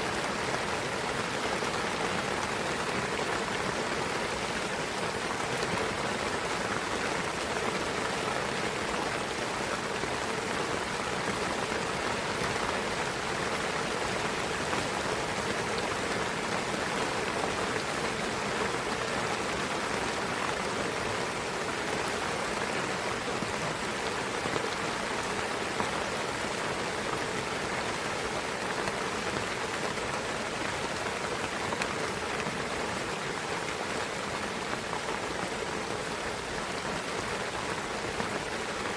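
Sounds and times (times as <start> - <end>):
rain patter in forest: 0.0 - 38.9.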